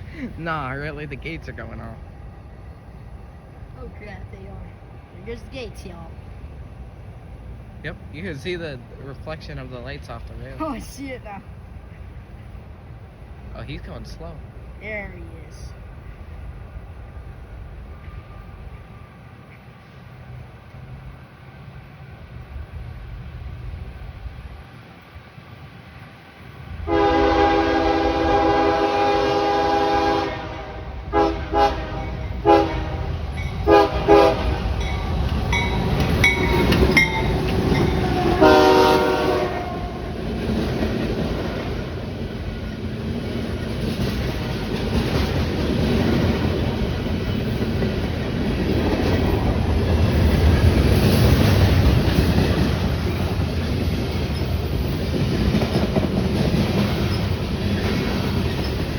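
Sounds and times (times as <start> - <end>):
train rumble and wheel clatter: 0.0 - 58.9
locomotive air horn: 26.9 - 34.6, 37.9 - 40.1.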